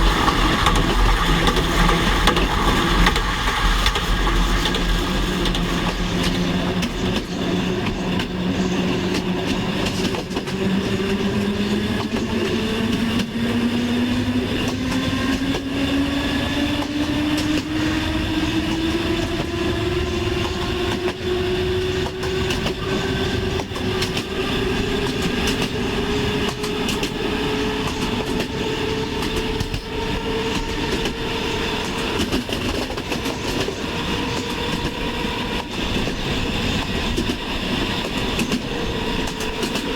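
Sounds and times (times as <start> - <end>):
rising motor whine: 0.0 - 8.7
train rumbling on rails: 0.0 - 39.9
wheels clicking on track: 0.0 - 39.9.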